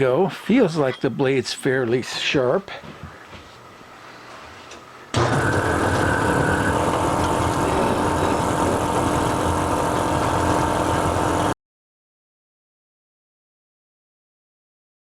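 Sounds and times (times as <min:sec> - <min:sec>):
power saw cutting metal: 0:05.2 - 0:11.6.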